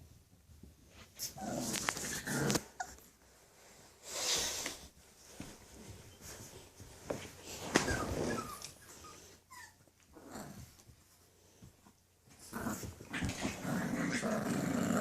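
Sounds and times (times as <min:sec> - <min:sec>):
puppies whimpering: 0:07.8 - 0:09.9.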